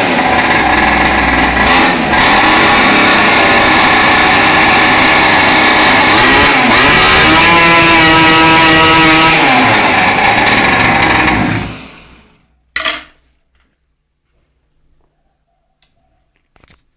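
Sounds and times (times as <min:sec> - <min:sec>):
mini moto engine revving: 0:00.0 - 0:12.3.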